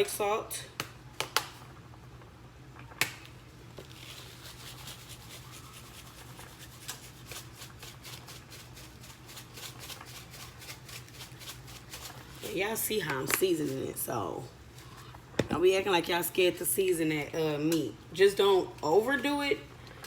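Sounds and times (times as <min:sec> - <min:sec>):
faint steady hum: 0:00.0 - 0:20.0
seasoning shaker rattling: 0:03.8 - 0:14.3.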